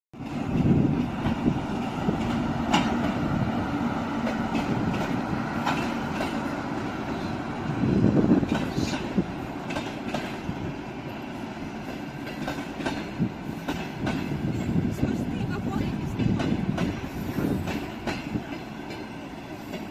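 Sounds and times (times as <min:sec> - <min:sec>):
wheels clacking over rail joints: 0:00.2 - 0:07.2, 0:07.8 - 0:19.9
train rumbling past: 0:00.2 - 0:19.9.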